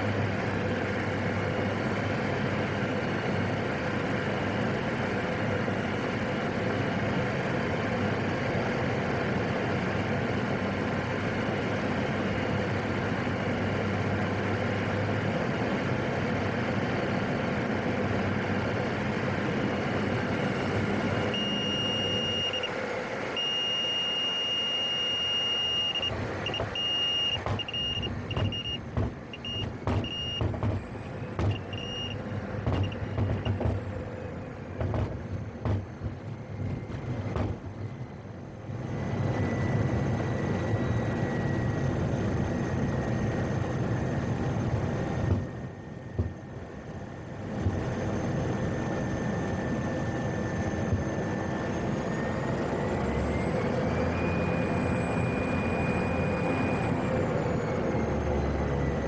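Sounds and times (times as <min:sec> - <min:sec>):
turboprop engine drone: 0:00.0 - 0:59.0
high warning tone beeping: 0:21.2 - 0:30.5, 0:31.4 - 0:33.6
knocks and bumps: 0:27.4 - 0:34.0, 0:34.8 - 0:37.8, 0:46.2 - 0:46.4.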